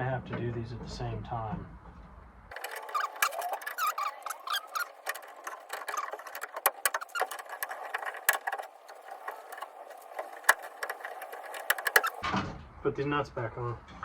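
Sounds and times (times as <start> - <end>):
metal clicks and rattles: 2.5 - 12.2.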